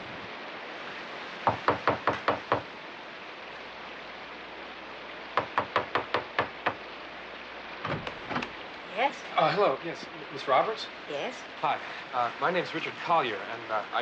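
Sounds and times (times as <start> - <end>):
rain hissing: 0.0 - 14.0
knocking on a door: 1.5 - 2.7, 5.4 - 6.8.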